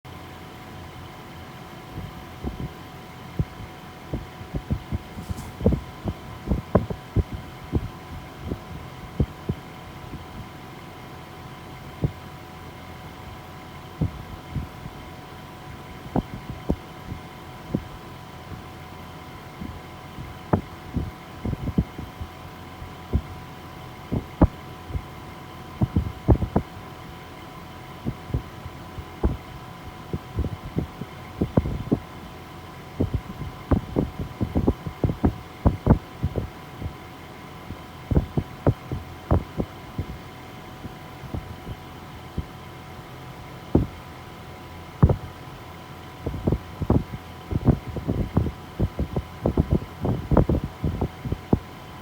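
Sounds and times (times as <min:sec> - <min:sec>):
air conditioner humming: 0:00.1 - 0:52.0
faint steady whine: 0:00.1 - 0:52.0
short low thumps: 0:03.4 - 0:07.9, 0:43.8 - 0:44.0
irregular low thumps: 0:03.4 - 0:09.4, 0:19.6 - 0:22.4, 0:23.0 - 0:23.4, 0:24.1 - 0:25.2, 0:25.8 - 0:26.8, 0:28.0 - 0:32.1, 0:33.0 - 0:37.0, 0:37.7 - 0:40.2, 0:40.8 - 0:42.5, 0:43.8 - 0:44.0, 0:45.0 - 0:45.2, 0:46.2 - 0:51.6.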